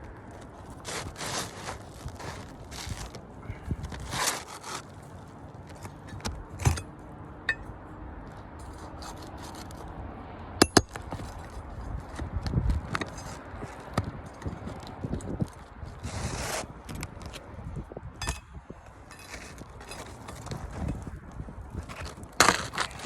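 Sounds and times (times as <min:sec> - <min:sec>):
scraping: 0:00.2 - 0:06.9, 0:18.2 - 0:23.0.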